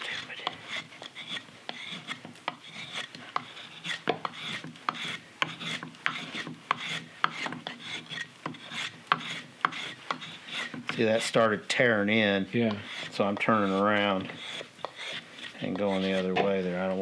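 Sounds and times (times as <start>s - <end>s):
hand tool shaving wood: 0.0s - 17.0s
blade clicking on wood: 0.1s - 11.4s, 12.5s - 16.4s.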